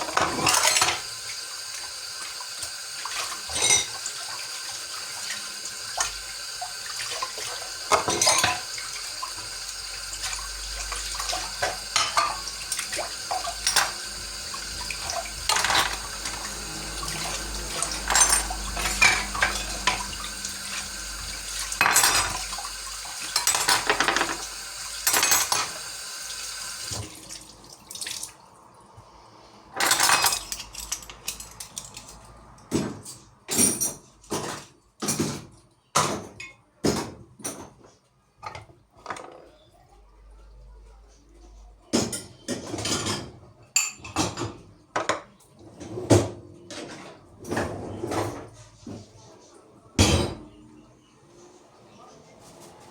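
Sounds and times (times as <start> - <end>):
dishes clinking in a sink: 0.0 - 27.2, 29.7 - 39.6, 41.9 - 49.2, 50.0 - 50.6
water running from a tap: 0.0 - 28.5.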